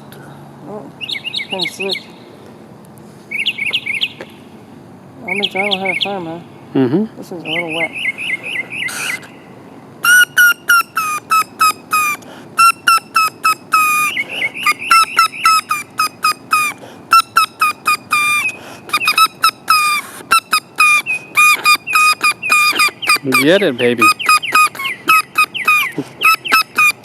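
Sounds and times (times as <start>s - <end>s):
grass reed whistle squawking: 8.8s - 9.3s, 10.0s - 27.0s.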